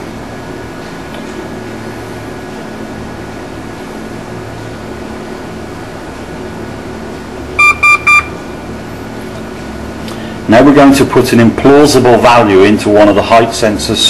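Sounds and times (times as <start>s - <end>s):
steady background hum: 0.0s - 14.0s
short electronic beeps: 7.6s - 8.4s.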